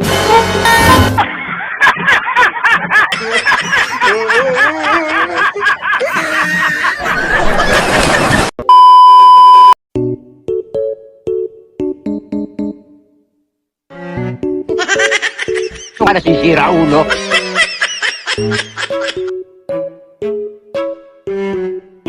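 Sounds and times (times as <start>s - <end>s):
voices laughing and snickering: 1.2s - 8.5s
electronic bleep: 8.7s - 9.8s.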